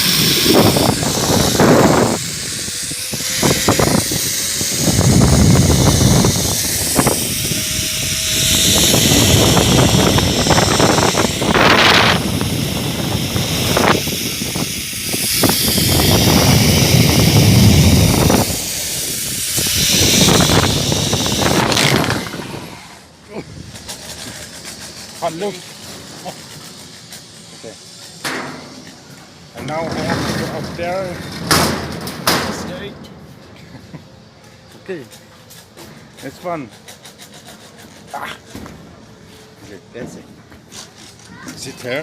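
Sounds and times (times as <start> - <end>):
wind buffeting microphone: 0.0 - 24.7.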